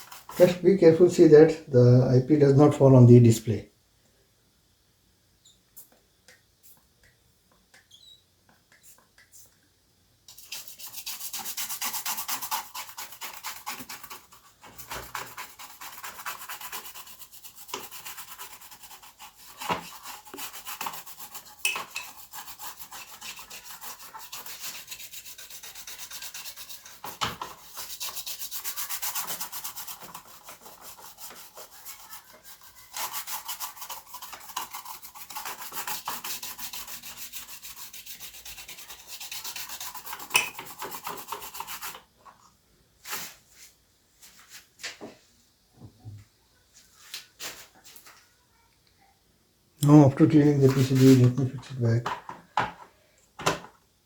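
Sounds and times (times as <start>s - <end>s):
scratchy scrubbing of circuit board: 10.3s - 42.0s, 50.5s - 51.4s.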